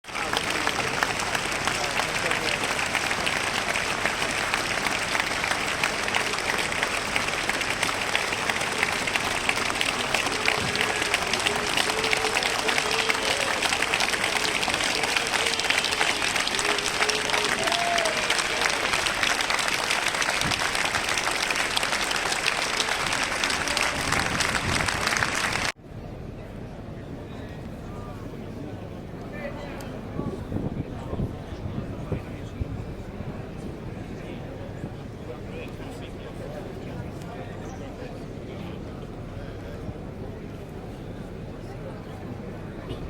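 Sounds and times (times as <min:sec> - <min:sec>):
large crowd applauding: 0:00.0 - 0:25.8.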